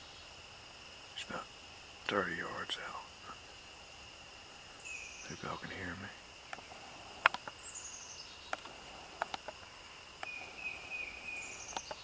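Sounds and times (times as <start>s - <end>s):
insects droning: 0.0s - 12.0s
sharp clicks: 6.5s - 7.6s, 8.5s - 10.4s.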